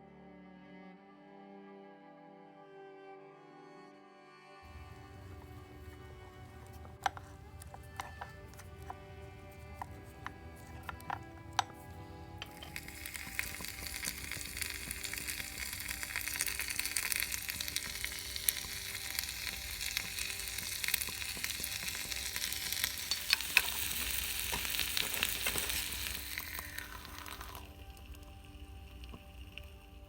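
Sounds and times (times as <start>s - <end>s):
food sizzling in hot oil: 9.8s - 30.0s.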